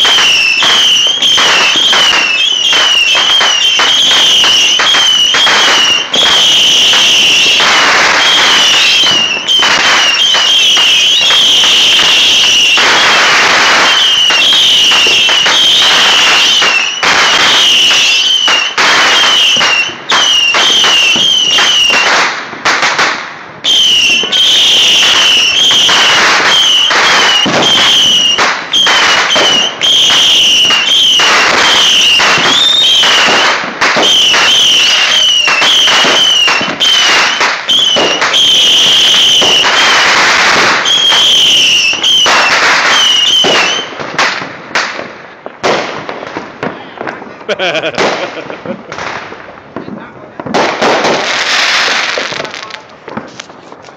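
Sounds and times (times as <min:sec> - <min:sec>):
fireworks bangs and crackling: 0:00.0 - 0:53.9
high wavering whistle: 0:23.7 - 0:40.1.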